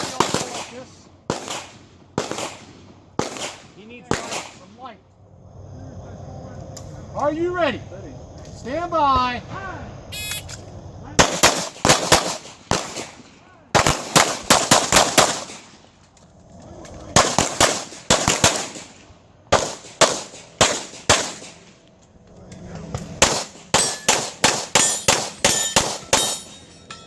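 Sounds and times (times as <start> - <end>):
rapid pistol shots: 0.0 - 4.6, 11.2 - 15.8, 17.1 - 21.8, 23.2 - 26.5.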